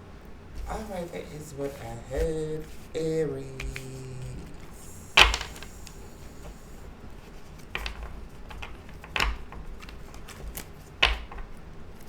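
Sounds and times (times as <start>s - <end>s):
cards snapping on a table: 5.2s - 6.7s, 7.7s - 11.6s.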